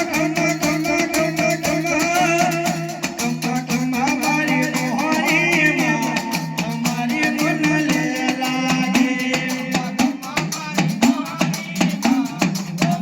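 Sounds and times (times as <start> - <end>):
person singing wavering melody: 0.0 - 10.2
fast steady drum beats: 0.0 - 13.0.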